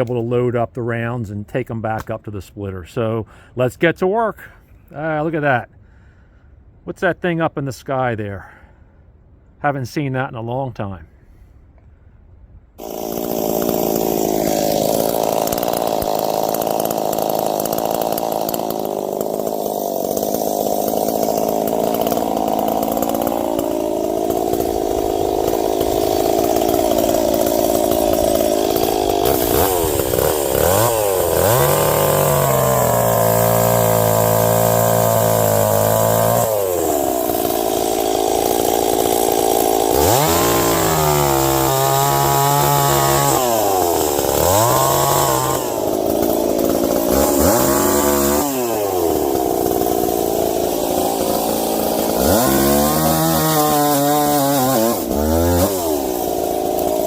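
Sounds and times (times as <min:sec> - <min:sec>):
chainsaw cutting wood: 0:12.8 - 0:57.0.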